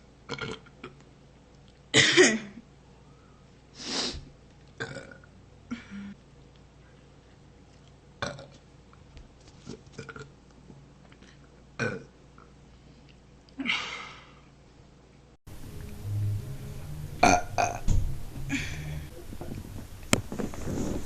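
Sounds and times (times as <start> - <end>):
woman burping: 4.8 - 6.2.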